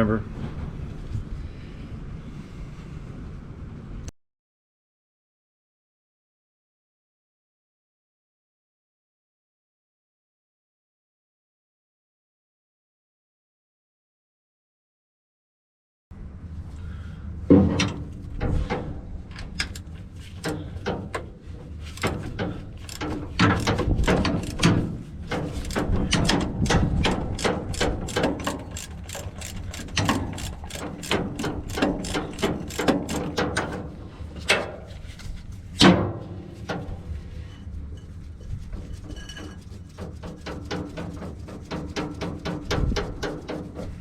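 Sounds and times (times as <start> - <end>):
ratchet wrench clicking: 22.0 - 26.8, 27.4 - 33.4.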